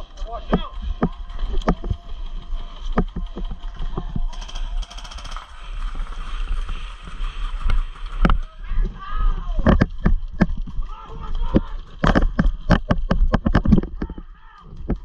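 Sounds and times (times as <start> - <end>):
rapid rattling gunfire burst: 4.3 - 6.3.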